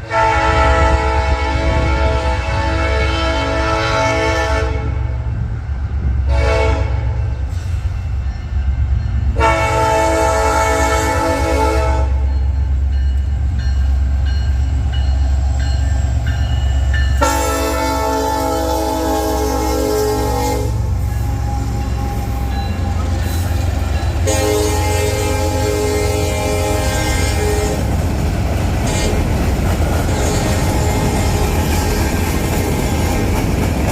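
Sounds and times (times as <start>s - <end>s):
locomotive air horn: 0.0s - 5.2s, 6.3s - 7.6s, 9.4s - 12.3s, 17.2s - 27.9s, 28.8s - 29.4s, 30.0s - 32.2s.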